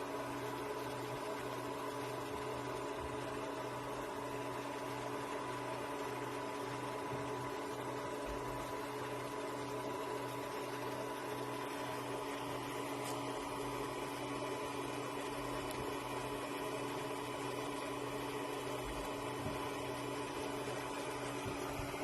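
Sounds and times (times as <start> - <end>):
steady machine hum: 0.0 - 22.0.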